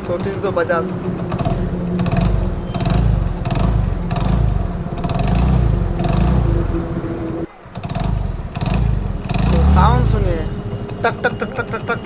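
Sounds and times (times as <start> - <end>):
motorcycle engine knocking clatter: 7.8 - 12.0.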